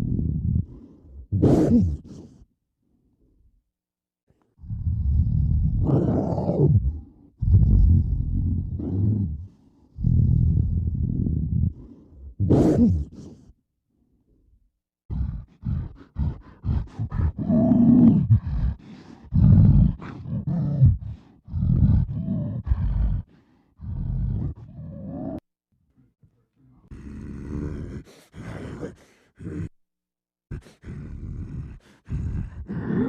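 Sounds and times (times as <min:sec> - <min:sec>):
man performing creature growls: 0:00.0 - 0:02.3, 0:04.6 - 0:13.5, 0:15.1 - 0:25.4, 0:26.9 - 0:29.8, 0:30.5 - 0:33.0.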